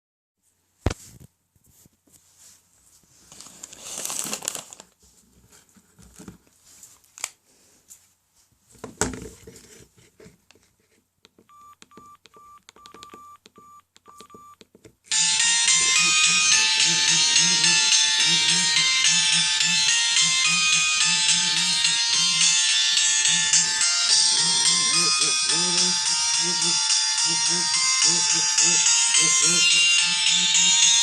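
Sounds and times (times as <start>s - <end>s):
short keypad beeps: 11.5s - 14.6s.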